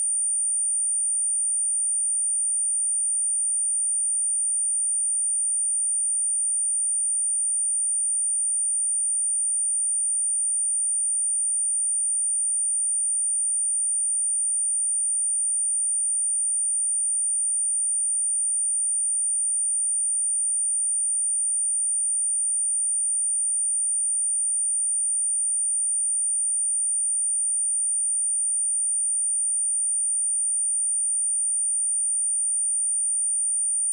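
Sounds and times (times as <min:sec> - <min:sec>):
high-pitched sine test tone: 0:00.0 - 0:33.9.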